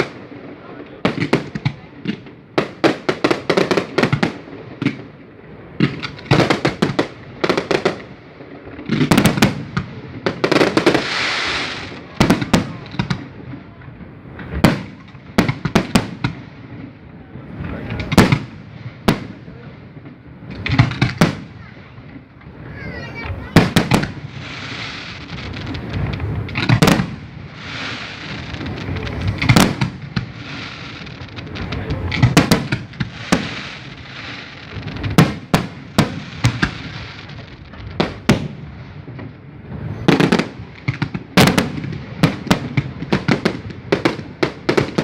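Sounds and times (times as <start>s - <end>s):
hissing crackle of fireworks: 0.0s - 45.0s
firework shells bursting: 20.4s - 21.7s, 23.2s - 39.3s.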